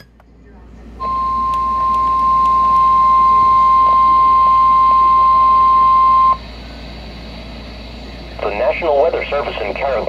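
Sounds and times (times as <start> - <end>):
high-pitched alarm tone: 1.0 - 6.6
radio hiss: 6.5 - 10.0.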